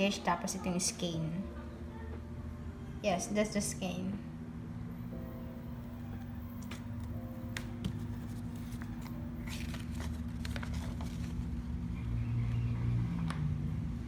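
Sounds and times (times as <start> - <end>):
steady low hum: 0.0 - 14.0
packaging rustling and crinkling: 8.2 - 11.7.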